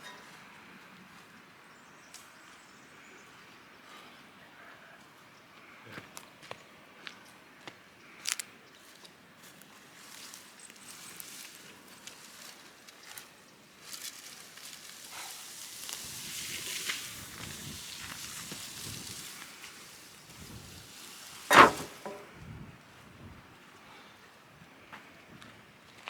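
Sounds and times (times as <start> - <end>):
broom brush rustling: 9.8 - 22.3
sharp knock: 21.5 - 22.2.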